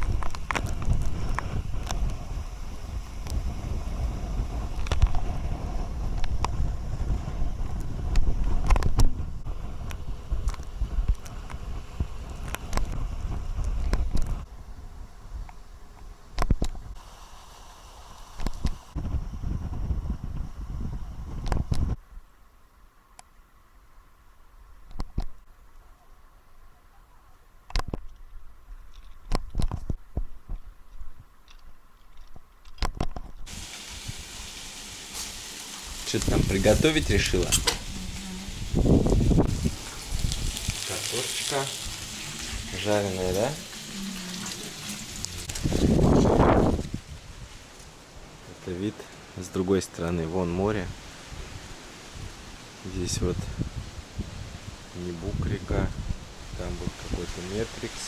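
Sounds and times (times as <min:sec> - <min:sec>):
wind buffeting microphone: 0:00.0 - 0:17.0, 0:18.4 - 0:22.0, 0:33.5 - 0:48.5, 0:50.6 - 0:58.0
potatoes sizzling in a pan: 0:17.0 - 0:19.0, 0:33.5 - 0:47.7.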